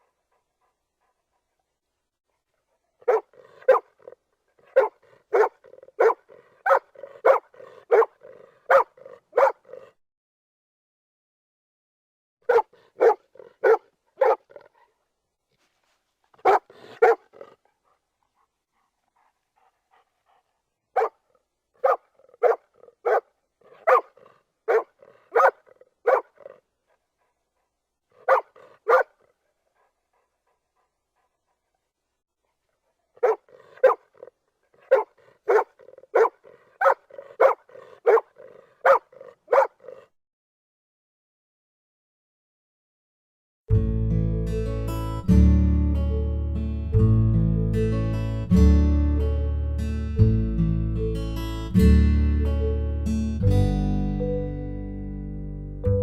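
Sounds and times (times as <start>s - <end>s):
dog barking: 2.4s - 10.0s, 12.4s - 15.0s, 16.4s - 17.7s, 21.0s - 21.2s, 21.8s - 26.6s, 28.2s - 29.4s, 32.5s - 40.1s.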